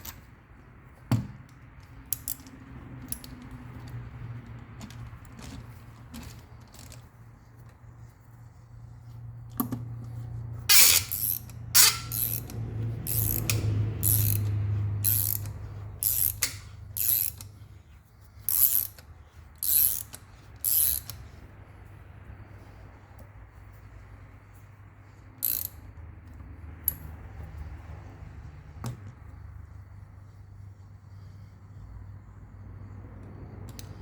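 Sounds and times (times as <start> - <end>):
ratchet wrench clicking: 1.4 - 7.1, 9.6 - 21.4, 25.2 - 27.7.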